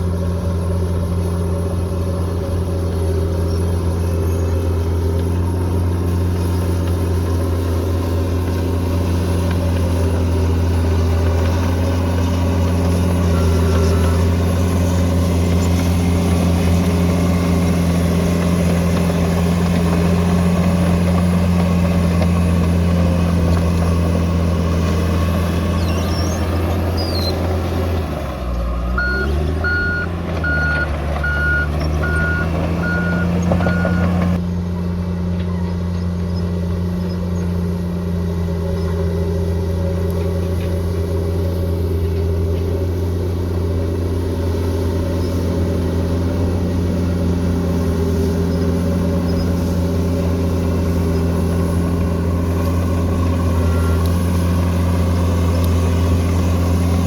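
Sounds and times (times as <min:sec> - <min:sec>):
bulldozer diesel engine running: 0:00.0 - 0:57.0
reversing alarm beeping: 0:28.7 - 0:34.2.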